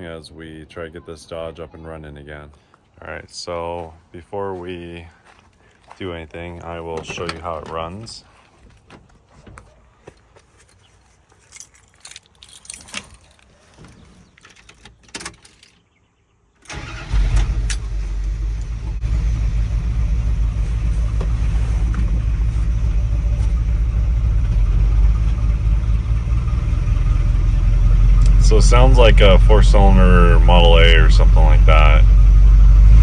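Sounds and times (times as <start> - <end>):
light clicks and rattles: 10.6 - 15.9
engine starting and idling roughly: 16.7 - 33.0.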